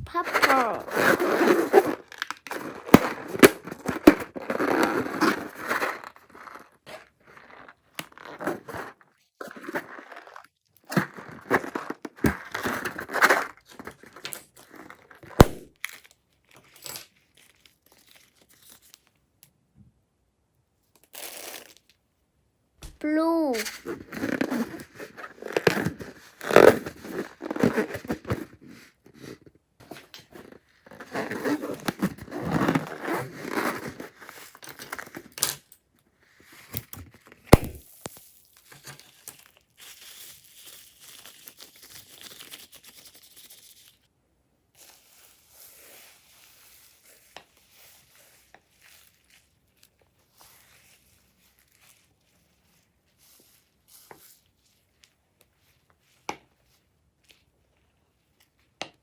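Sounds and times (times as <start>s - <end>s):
sharp loud snap: 15.4s - 15.7s, 37.6s - 37.8s.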